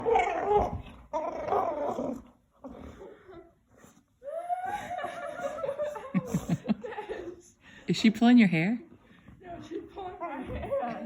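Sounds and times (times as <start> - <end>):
dog grumbling vocal calls: 0.0 - 3.5.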